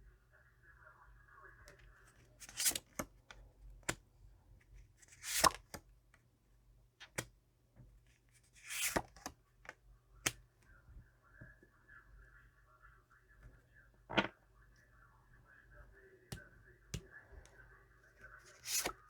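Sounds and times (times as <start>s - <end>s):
cards sliding swishes: 2.4s - 3.0s, 5.1s - 5.8s, 8.4s - 9.3s, 18.5s - 19.0s
cards tapped on a table: 14.1s - 14.4s.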